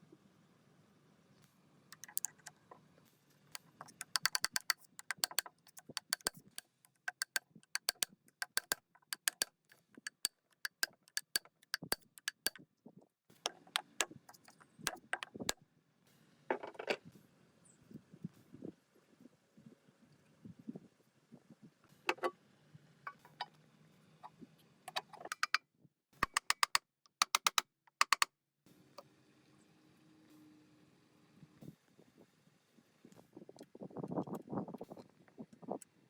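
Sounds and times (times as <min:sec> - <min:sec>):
hand tools clicking on metal: 0:02.0 - 0:02.5, 0:03.6 - 0:12.6, 0:13.5 - 0:15.6, 0:25.3 - 0:25.6, 0:26.2 - 0:28.3.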